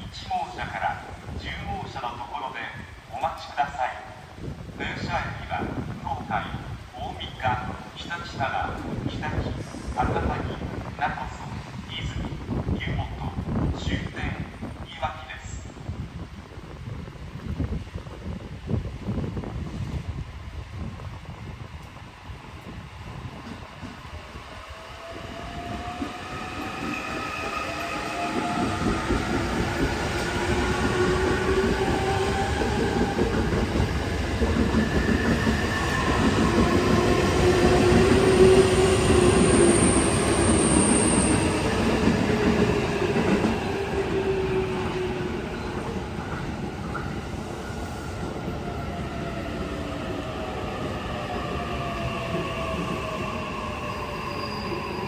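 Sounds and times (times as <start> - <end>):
high train squeal: 24.6 - 33.0, 34.7 - 55.0.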